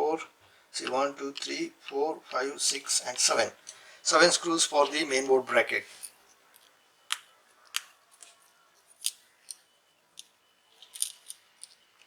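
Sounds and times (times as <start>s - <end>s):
small parts clicking: 8.9s - 12.0s.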